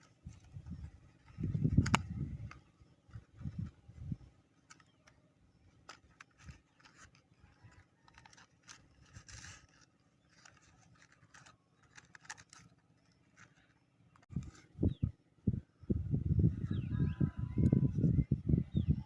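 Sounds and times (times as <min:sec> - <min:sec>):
short scratching noises: 0:05.8 - 0:14.8.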